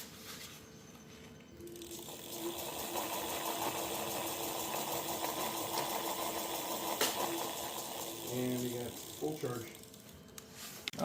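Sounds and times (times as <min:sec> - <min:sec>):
small electric motor whirring: 0:01.6 - 0:10.2.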